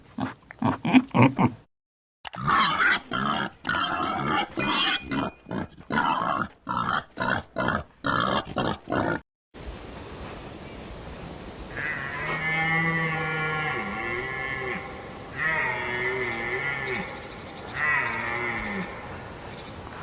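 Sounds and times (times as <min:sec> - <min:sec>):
animal grunts: 0:05.1 - 0:09.2.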